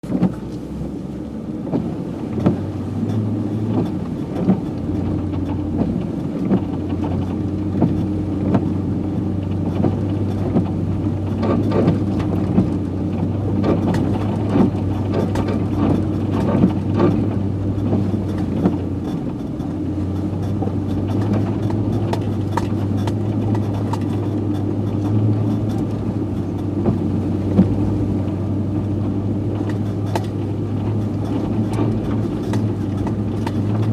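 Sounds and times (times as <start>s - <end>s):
pickup truck engine running: 0.0s - 33.9s
short knocks and clunks: 9.5s - 33.9s.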